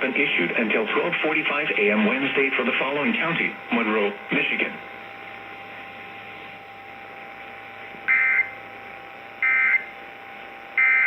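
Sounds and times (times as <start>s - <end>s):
radio hiss: 0.0s - 11.0s
buzzy two-tone digital chirps: 8.1s - 8.6s, 9.4s - 9.9s, 10.8s - 11.0s.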